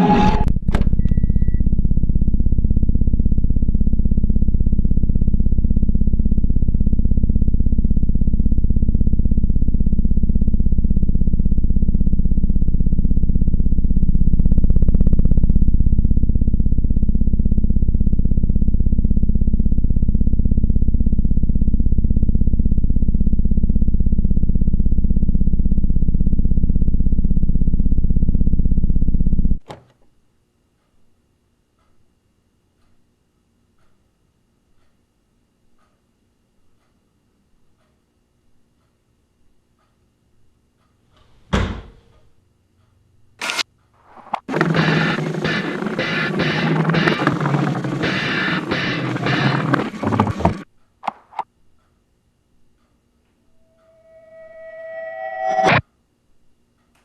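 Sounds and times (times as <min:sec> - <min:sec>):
low synthesizer drone: 0:00.0 - 0:29.6, 0:44.5 - 0:50.6, 0:53.4 - 0:55.8.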